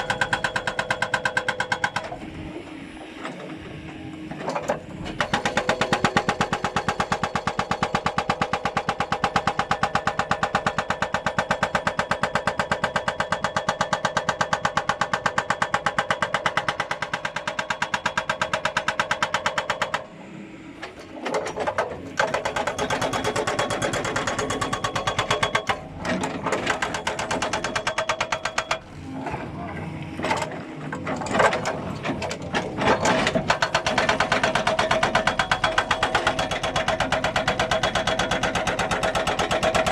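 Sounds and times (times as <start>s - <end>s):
hydraulic breaker hammering: 0.0s - 2.5s, 3.2s - 20.2s, 20.8s - 29.0s, 30.2s - 39.9s.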